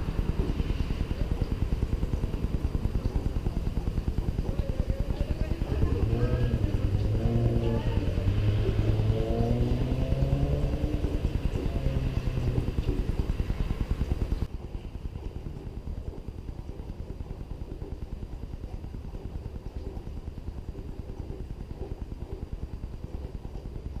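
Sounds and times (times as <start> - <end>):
car exhaust rumble: 0.0 - 14.5.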